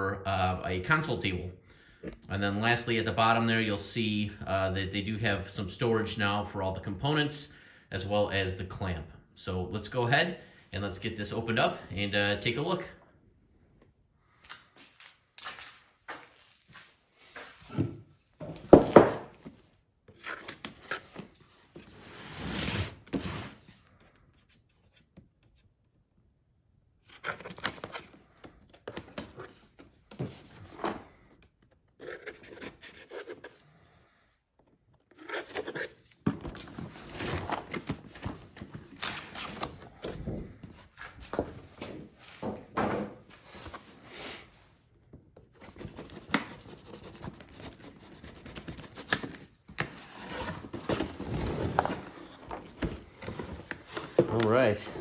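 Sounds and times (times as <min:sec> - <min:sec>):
cardboard tearing and scraping: 0:35.1 - 0:39.8, 0:45.6 - 0:55.0.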